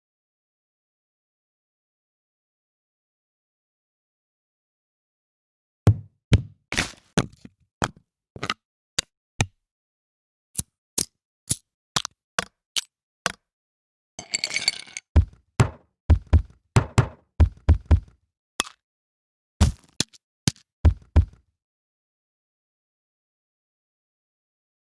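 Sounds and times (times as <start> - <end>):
drum sample hits: 15.2 - 18.1.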